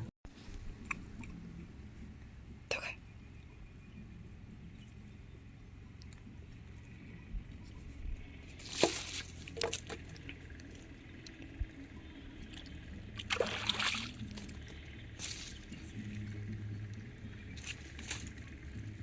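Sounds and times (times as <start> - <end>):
water splashing: 8.5 - 16.4
water dripping and trickling: 8.6 - 18.9.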